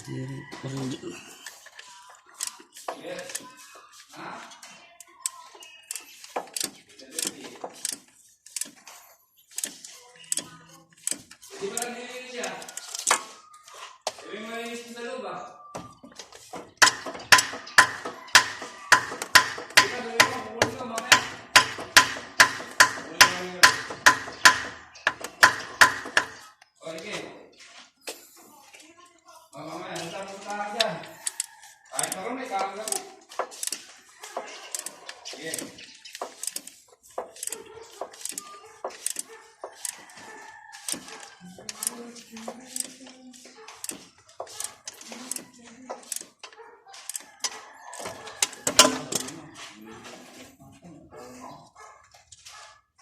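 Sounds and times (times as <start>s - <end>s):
rooster crowing: 0.0s - 1.4s, 39.7s - 41.9s, 47.0s - 49.8s
sharp clicks and knocks: 16.0s - 26.5s, 30.0s - 40.0s, 43.6s - 49.4s
hammer blows ringing: 16.8s - 26.4s.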